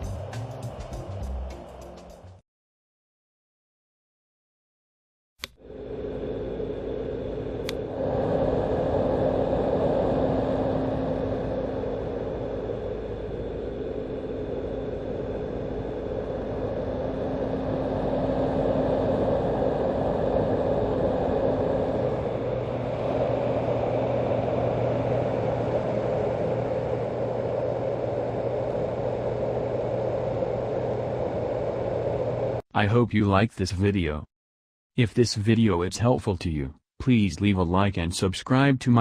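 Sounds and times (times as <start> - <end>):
white noise machine rushing: 0.0 - 2.3, 5.5 - 32.6
faint low hum: 5.7 - 32.6.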